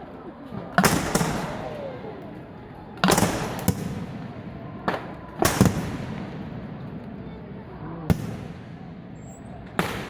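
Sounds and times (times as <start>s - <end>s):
fireworks bursting in sharp bangs: 0.6s - 2.0s, 3.0s - 10.0s.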